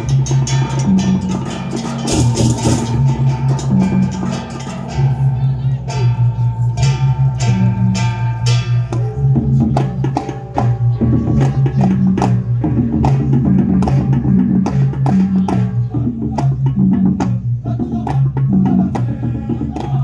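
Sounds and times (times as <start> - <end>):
rapid cymbal and drum strokes: 0.0 - 16.6
low hum of large gongs: 0.0 - 20.0.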